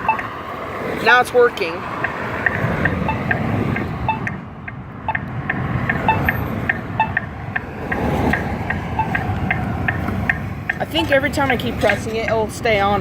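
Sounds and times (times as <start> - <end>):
pedestrian push button beeping: 0.0 - 0.4, 2.4 - 10.8
street traffic: 0.0 - 13.0.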